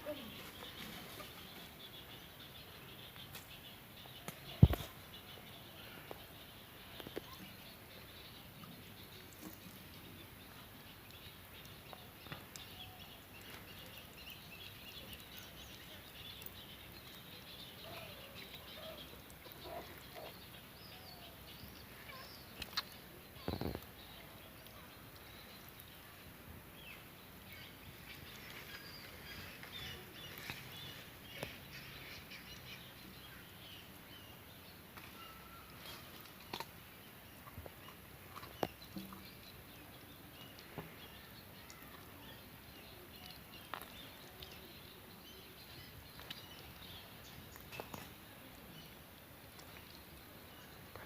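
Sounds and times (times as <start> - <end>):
bird chirps: 0.0 - 26.2.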